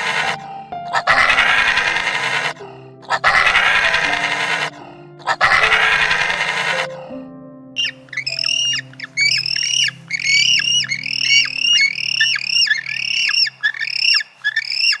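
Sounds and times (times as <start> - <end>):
bird squawking: 0.1 - 6.9, 7.8 - 15.0.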